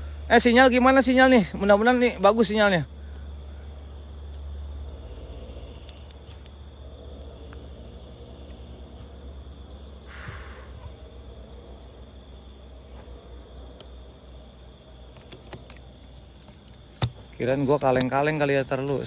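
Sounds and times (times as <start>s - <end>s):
crickets chirring: 0.0s - 19.0s
sharp clicks: 5.6s - 6.6s, 15.1s - 19.0s.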